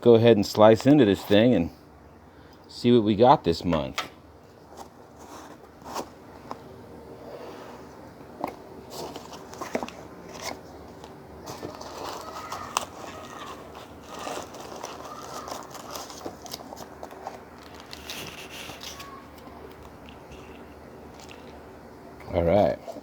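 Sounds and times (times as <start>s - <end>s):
wrappers crinkling and rustling: 4.5s - 6.2s, 8.8s - 21.6s
cardboard box being opened: 8.9s - 19.0s.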